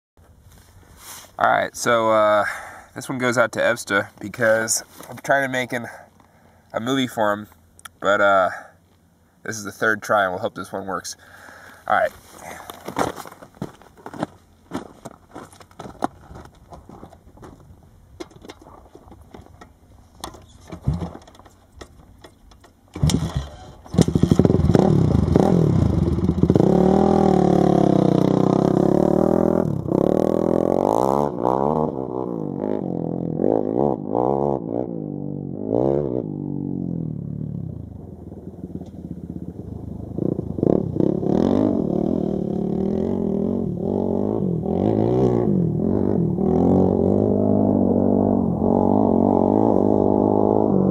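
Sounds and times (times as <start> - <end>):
atv engine revving: 22.9 - 50.9.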